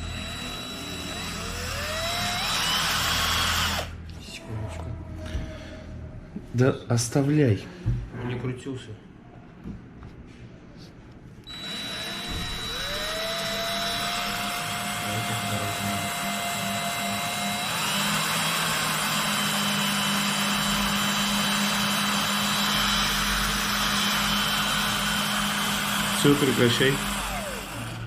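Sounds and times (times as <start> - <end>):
electric motor whining: 0.0 - 4.0, 11.5 - 28.0.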